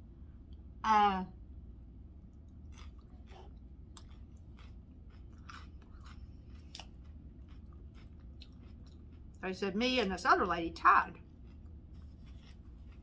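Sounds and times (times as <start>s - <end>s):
low hum: 0.0s - 13.0s
person chewing: 2.3s - 9.4s, 11.1s - 13.0s.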